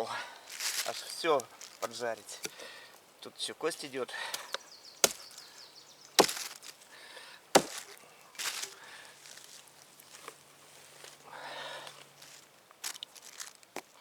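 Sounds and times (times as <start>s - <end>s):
hatchet chopping through bone: 4.4s - 5.3s, 6.2s - 6.6s, 7.6s - 7.9s.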